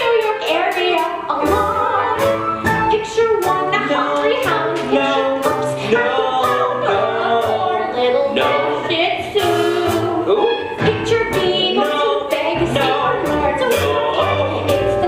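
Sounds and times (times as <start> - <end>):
instrumental accompaniment with beat: 0.0 - 15.0
person singing: 3.2 - 15.0.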